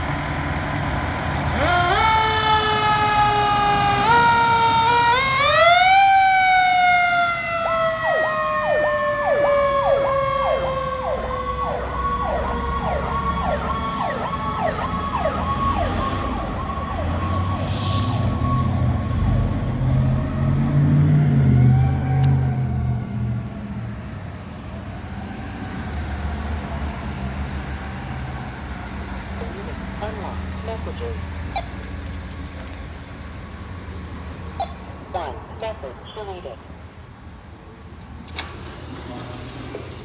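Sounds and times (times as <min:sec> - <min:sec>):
fire truck engine rumble: 0:00.0 - 0:40.0
wailing siren: 0:01.5 - 0:23.6
yelping siren: 0:01.6 - 0:19.4, 0:20.0 - 0:23.3.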